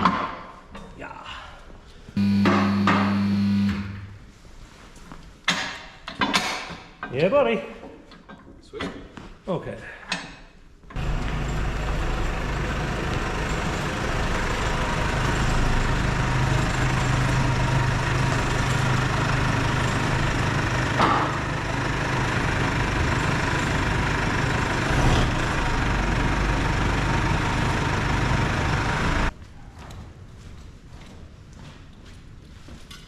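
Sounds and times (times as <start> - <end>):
hydraulic power unit running: 2.2 - 4.2, 11.0 - 29.3.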